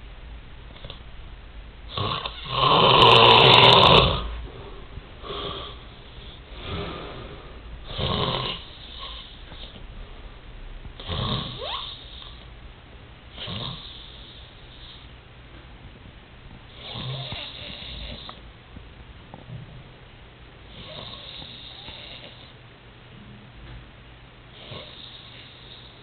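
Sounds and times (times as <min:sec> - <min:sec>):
person snoring: 0:01.9 - 0:09.8, 0:16.8 - 0:18.4, 0:20.7 - 0:22.5.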